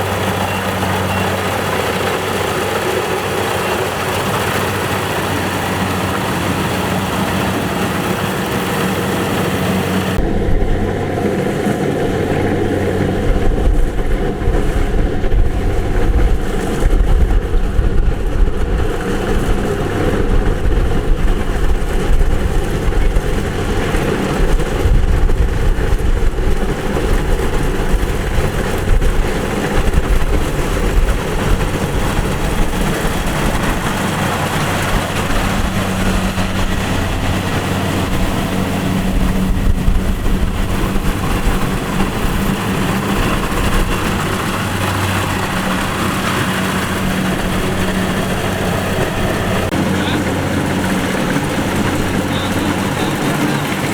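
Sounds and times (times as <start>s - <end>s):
combine harvester diesel engine: 0.0s - 53.9s.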